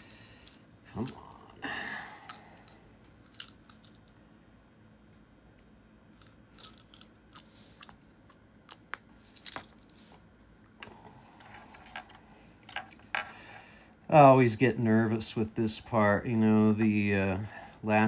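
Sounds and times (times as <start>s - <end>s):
small metal parts clicking: 2.3s - 4.1s, 6.6s - 7.9s.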